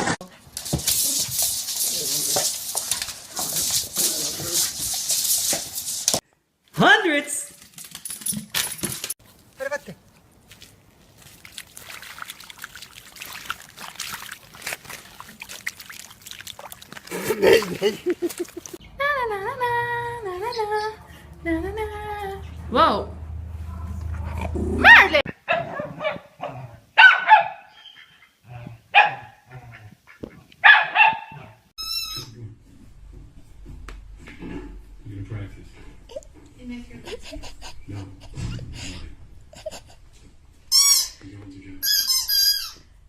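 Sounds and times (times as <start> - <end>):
water trickling and splashing: 9.2 - 18.8
dog barking: 24.8 - 28.0, 28.9 - 29.8, 30.6 - 31.6.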